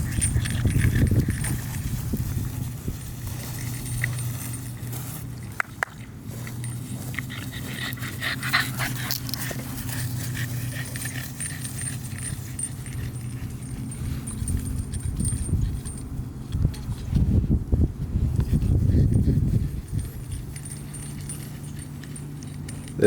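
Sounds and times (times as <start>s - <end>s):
dogs close by: 0.0s - 2.3s, 6.3s - 16.0s
steady low hum: 0.0s - 23.0s.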